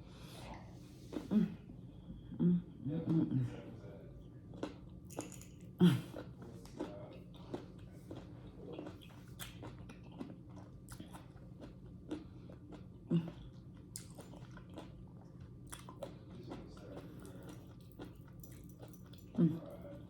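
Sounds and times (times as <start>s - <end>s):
person chewing fruit: 4.5s - 20.0s.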